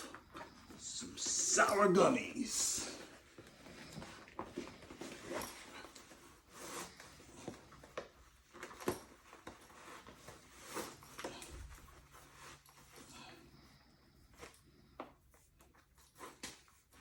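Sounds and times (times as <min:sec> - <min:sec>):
handling rustles: 0:03.0 - 0:13.1.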